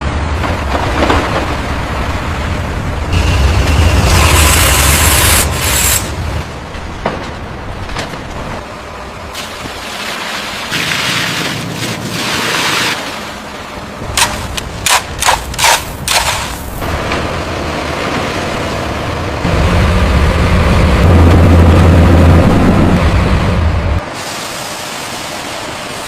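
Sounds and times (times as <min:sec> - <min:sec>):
heavy engine droning: 0:00.0 - 0:11.9, 0:12.9 - 0:26.0
machinery scraping: 0:03.1 - 0:06.4, 0:14.1 - 0:16.8.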